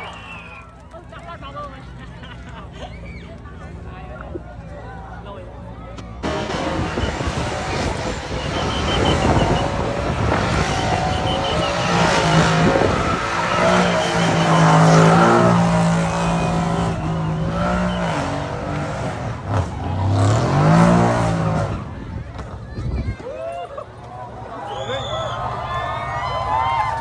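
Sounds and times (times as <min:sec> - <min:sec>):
sports car engines running loud: 0:00.0 - 0:23.2.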